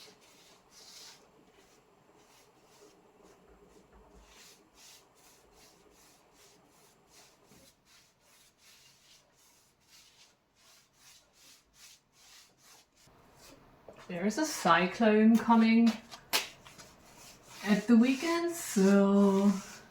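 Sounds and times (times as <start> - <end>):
brush rubbing on a door: 0.0 - 13.7, 16.5 - 19.9.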